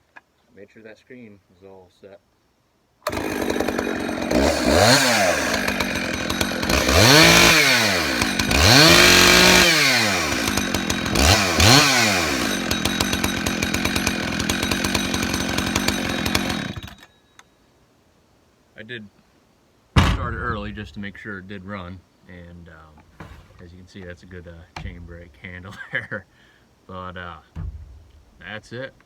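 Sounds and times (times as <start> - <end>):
chainsaw revving and idling: 3.1 - 17.0.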